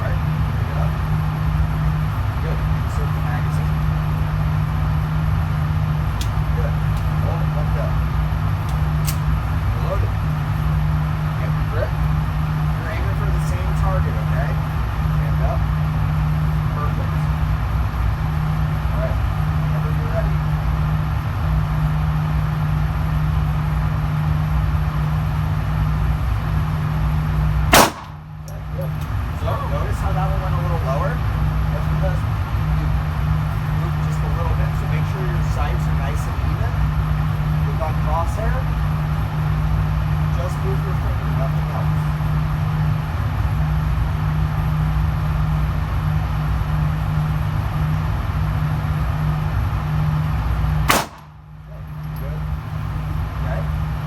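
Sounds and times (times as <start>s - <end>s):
ventilation humming: 0.0s - 54.0s
pistol shot: 27.7s - 28.4s, 50.9s - 51.4s.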